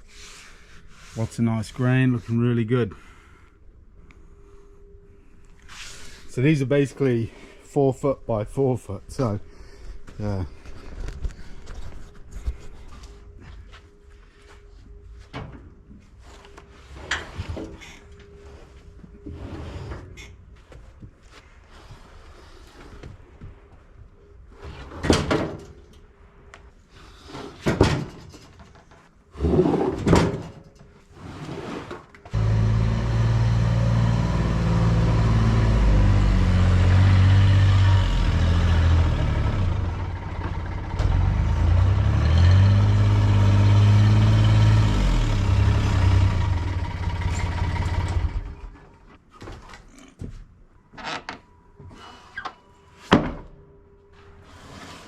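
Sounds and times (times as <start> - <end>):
engine running: 32.3 - 49.0.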